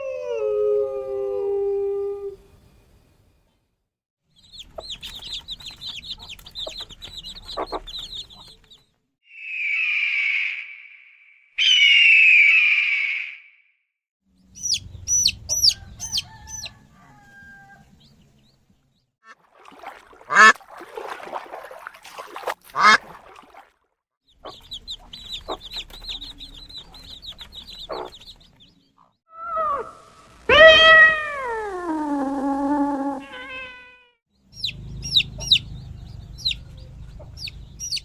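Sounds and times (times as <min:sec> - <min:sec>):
poultry chirps: 0:04.4 - 0:08.9, 0:14.4 - 0:19.0, 0:24.3 - 0:29.8, 0:34.4 - 0:38.0
poultry squawks: 0:04.6 - 0:08.6, 0:22.7 - 0:23.0, 0:26.9 - 0:28.2, 0:33.2 - 0:35.8.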